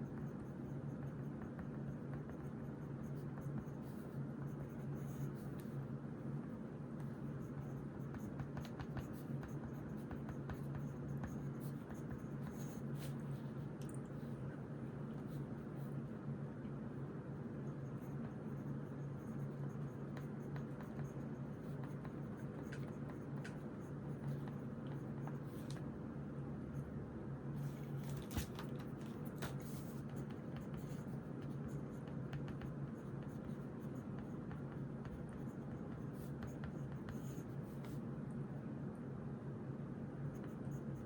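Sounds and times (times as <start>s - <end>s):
pen scratching on paper: 0.0s - 5.8s, 6.6s - 13.6s, 17.7s - 25.8s, 28.1s - 38.0s
low steady hum: 0.0s - 41.0s.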